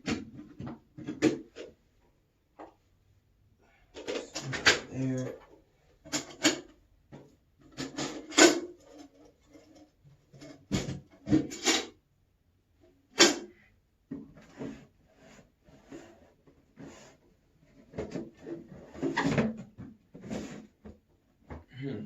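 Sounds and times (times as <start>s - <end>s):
soft rattling and rustling: 3.8s - 12.0s
tools knocking and clattering: 4.0s - 11.9s.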